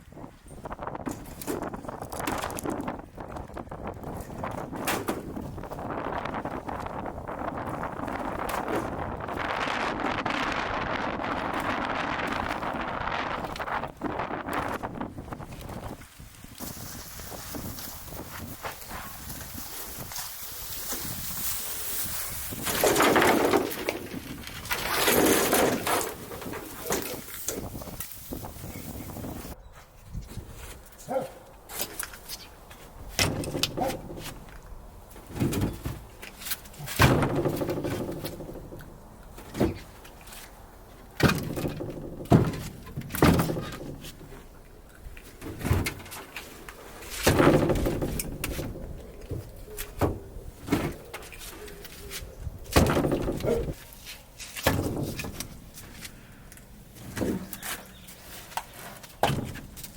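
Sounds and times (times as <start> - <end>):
firewood knocking and clattering: 0.9 - 10.4, 22.4 - 29.6, 31.6 - 51.9, 52.6 - 56.1, 58.6 - 59.9.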